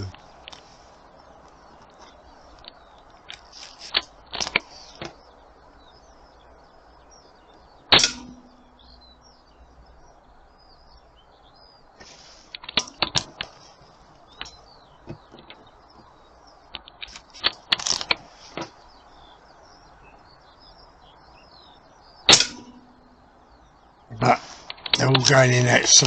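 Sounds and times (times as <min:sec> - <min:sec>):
birds chirping: 0:00.0 - 0:26.0
air rifle shot: 0:07.9 - 0:08.4, 0:22.3 - 0:22.9.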